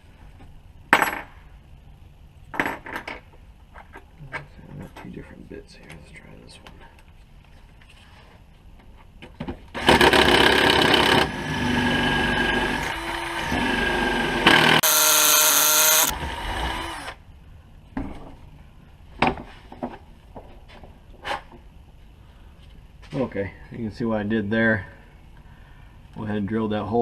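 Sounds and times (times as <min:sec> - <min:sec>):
electric drill boring metal: 0:09.8 - 0:17.1.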